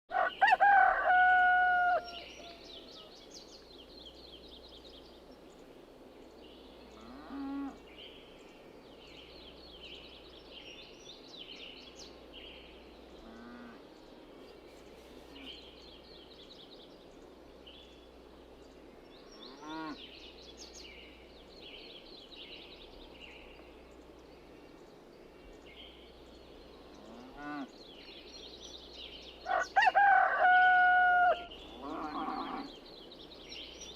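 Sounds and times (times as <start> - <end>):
rooster crowing: 0.1 - 3.1, 29.4 - 32.0
small birds chirping: 2.0 - 33.9.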